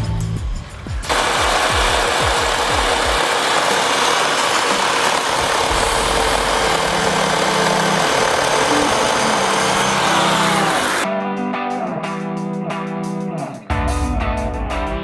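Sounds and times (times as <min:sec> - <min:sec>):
petrol yard machine engine running: 0:01.1 - 0:11.0.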